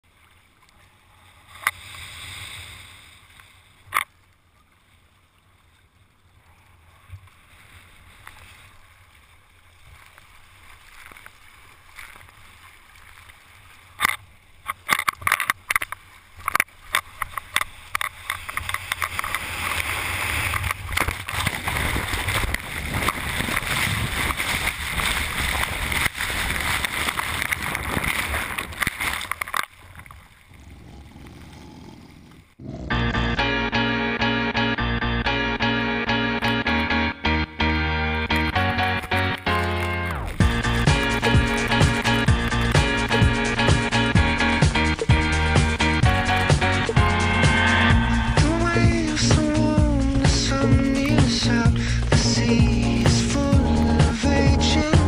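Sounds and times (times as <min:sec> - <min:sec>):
whitewater rushing: 0:38.5 - 0:55.0.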